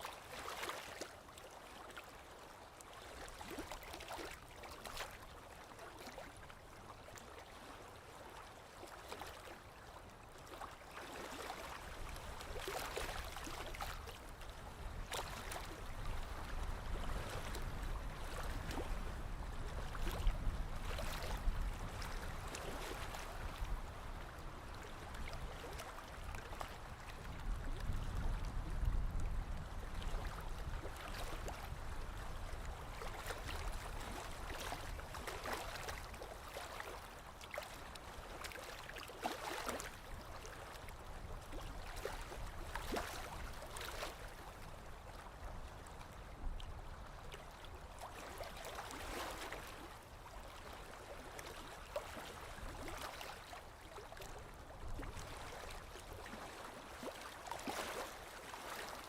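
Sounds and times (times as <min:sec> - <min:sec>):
waves lapping on shore: 0:00.0 - 0:59.0.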